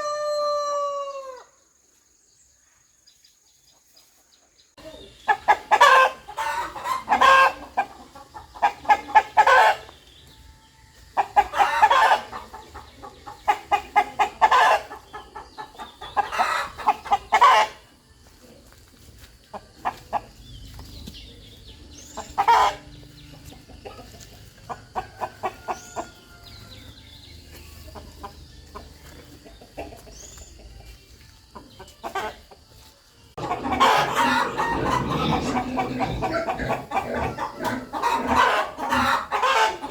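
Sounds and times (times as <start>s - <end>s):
small birds chirping: 1.9s - 39.9s
rooster clucking: 4.8s - 9.9s, 11.2s - 17.8s, 22.1s - 26.1s, 33.4s - 39.9s.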